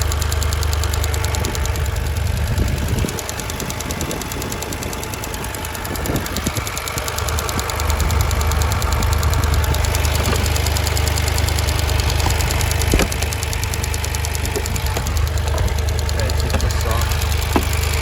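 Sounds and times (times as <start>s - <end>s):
car engine idling: 0.0s - 18.0s
rapid even ticking: 0.0s - 18.0s.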